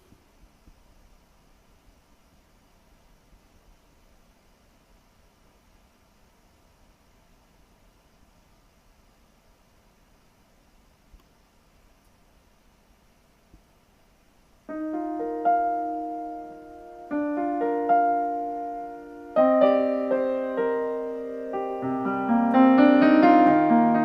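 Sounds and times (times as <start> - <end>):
solo piano through loudspeakers: 14.7 - 24.0.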